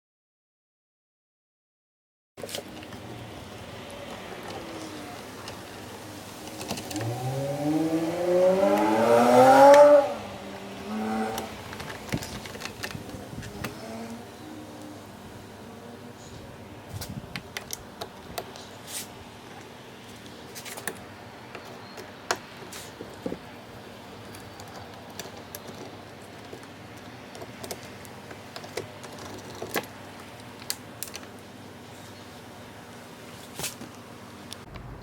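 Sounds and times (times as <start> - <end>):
plastic parts clicking: 11.3 - 14.2, 24.2 - 31.4.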